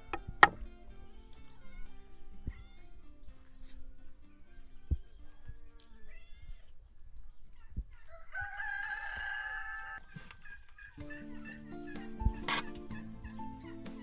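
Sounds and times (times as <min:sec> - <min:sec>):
sharp knock: 0:00.1 - 0:00.7
rooster crowing: 0:07.8 - 0:13.5.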